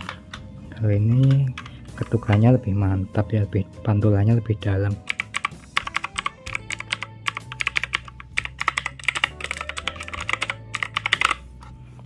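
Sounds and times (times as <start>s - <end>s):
mechanical keyboard typing: 0.0s - 0.4s, 1.1s - 1.7s, 5.0s - 11.4s.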